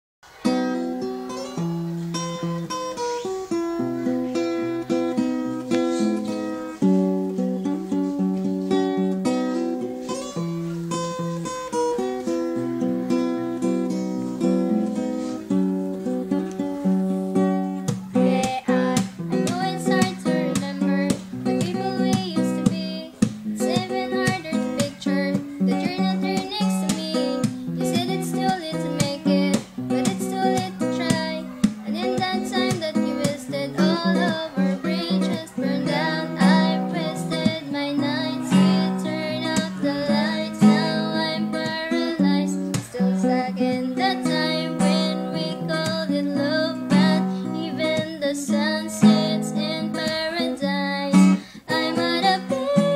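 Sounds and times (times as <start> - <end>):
acoustic guitar strumming: 0.2 - 52.9
person singing: 0.3 - 52.9.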